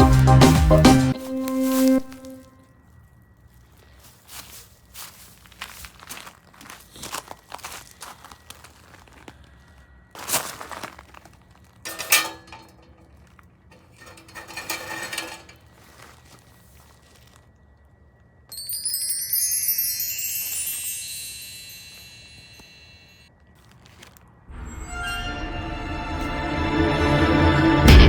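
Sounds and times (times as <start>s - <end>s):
handling clinks and rustles: 10.2s - 17.5s, 18.5s - 22.7s, 23.5s - 24.2s
shimmering high chime: 18.5s - 23.3s, 24.6s - 28.0s.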